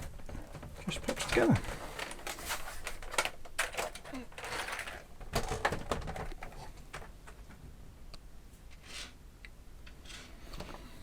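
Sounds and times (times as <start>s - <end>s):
plastic parts clicking and knocking: 0.0s - 7.7s.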